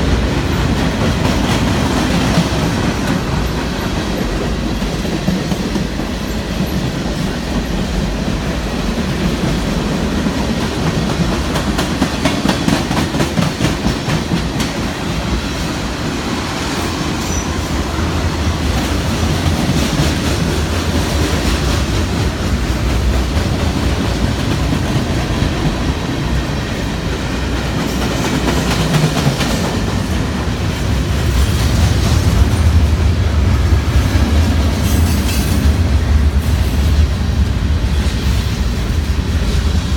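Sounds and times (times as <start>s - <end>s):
freight train wheels clicking: 0.0s - 39.9s.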